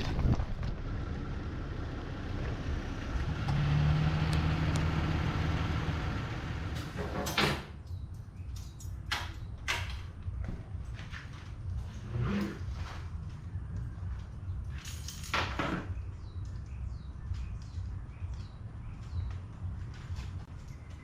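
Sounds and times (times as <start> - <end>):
knocks and clatters: 14.6 - 16.0.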